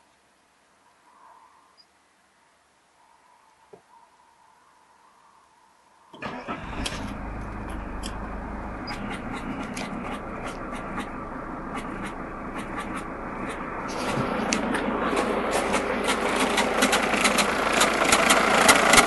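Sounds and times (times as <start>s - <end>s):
diesel engine starting and idling: 6.2s - 19.0s.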